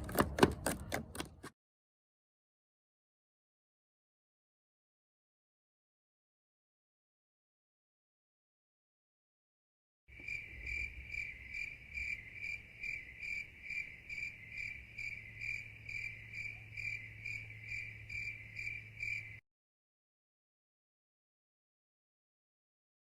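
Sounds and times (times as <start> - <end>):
cricket chirping: 10.1 - 19.4.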